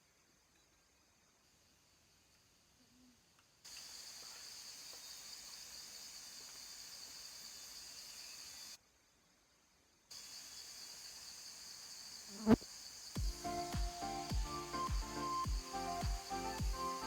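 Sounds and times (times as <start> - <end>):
cicadas buzzing: 3.7 - 8.8, 10.1 - 17.0.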